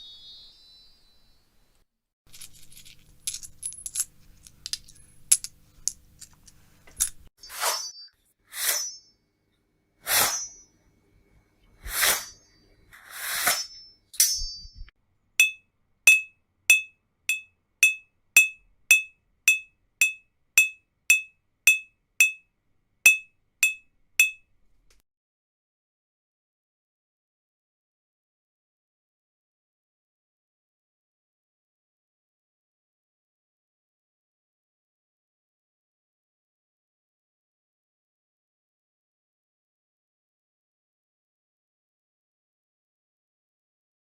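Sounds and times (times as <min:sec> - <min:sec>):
swishes: 0:10.0 - 0:10.6, 0:11.8 - 0:13.8
sharp clicks with ringing tone: 0:14.2 - 0:22.4.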